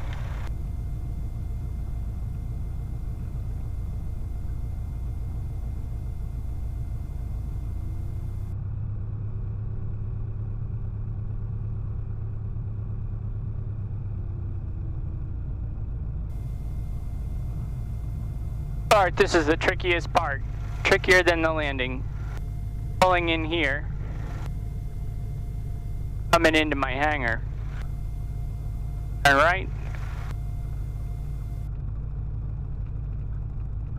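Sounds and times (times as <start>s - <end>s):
light aircraft engine droning: 0.0s - 8.5s, 16.3s - 33.8s.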